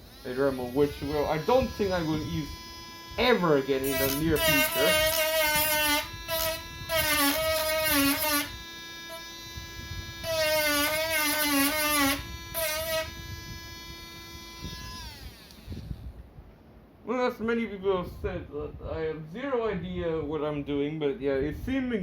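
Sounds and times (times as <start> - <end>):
rotary tool sanding plastic: 0.0 - 16.0.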